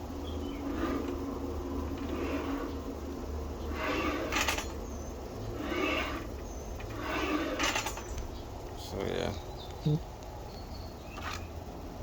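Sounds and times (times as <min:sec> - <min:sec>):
saw head sliding on rails: 0:00.6 - 0:01.2, 0:01.9 - 0:02.8, 0:03.6 - 0:04.8, 0:05.4 - 0:08.2.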